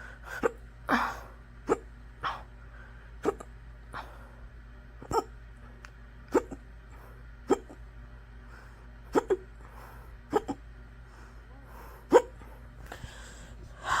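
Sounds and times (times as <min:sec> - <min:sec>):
person hiccuping: 0:00.4 - 0:01.1, 0:01.7 - 0:01.9, 0:03.2 - 0:03.5, 0:05.0 - 0:05.4, 0:06.3 - 0:06.6, 0:07.5 - 0:07.8, 0:09.1 - 0:09.5, 0:10.3 - 0:10.6, 0:12.1 - 0:12.4.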